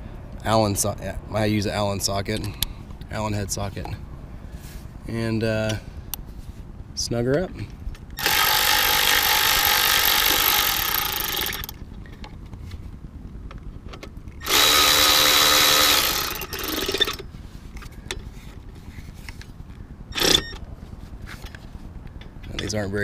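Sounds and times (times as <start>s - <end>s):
power driver spinning: 8.2s - 12.0s, 14.4s - 18.4s, 20.1s - 20.7s.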